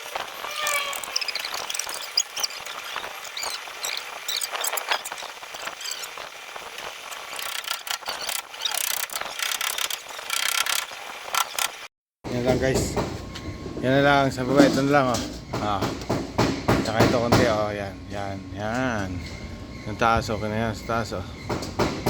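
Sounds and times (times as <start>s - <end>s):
short squeaks: 0.2s - 6.3s, 7.2s - 11.8s
ratchet metallic clicking: 7.2s - 11.7s.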